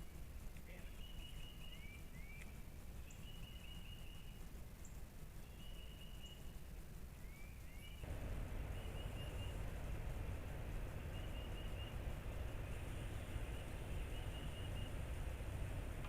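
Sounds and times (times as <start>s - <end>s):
birds chirping: 0.7s - 4.4s, 7.3s - 16.0s
low rumbling background: 8.0s - 16.0s.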